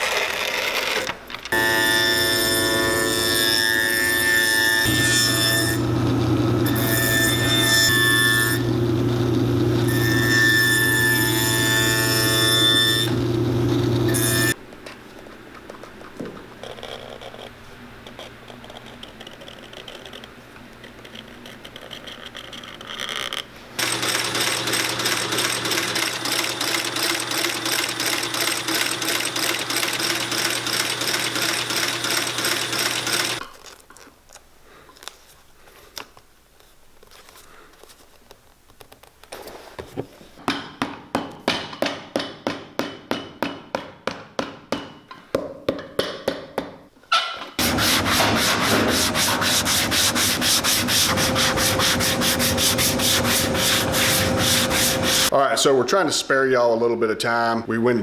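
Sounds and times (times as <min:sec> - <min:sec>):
quick rasp strokes: 0:47.6 - 0:55.3
sanding a leather sole: 0:47.6 - 0:55.3.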